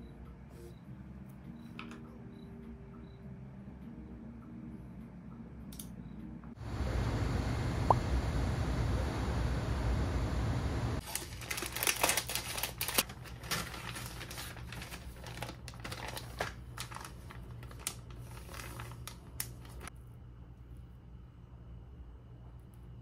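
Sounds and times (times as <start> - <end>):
steady rushing noise: 6.6 - 11.0.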